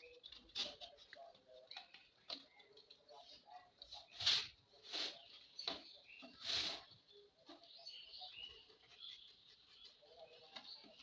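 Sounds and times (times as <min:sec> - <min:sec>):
paper rustling and scratching: 0:03.9 - 0:07.7.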